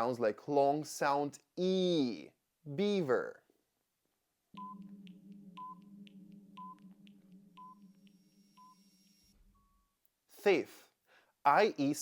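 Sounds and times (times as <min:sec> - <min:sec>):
low steady drone: 0:04.6 - 0:09.6
short electronic beeps: 0:04.6 - 0:10.0.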